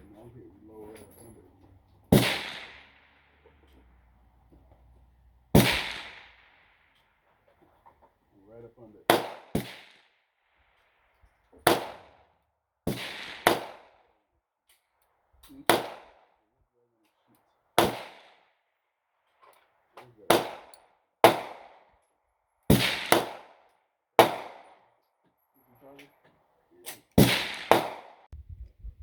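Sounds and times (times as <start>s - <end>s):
gunshots echoing: 2.1s - 4.0s, 5.5s - 6.6s, 9.1s - 10.0s, 11.6s - 12.2s, 12.9s - 13.9s, 15.7s - 16.2s, 17.8s - 18.3s, 20.3s - 21.8s, 22.7s - 23.6s, 24.2s - 24.8s, 27.2s - 28.2s.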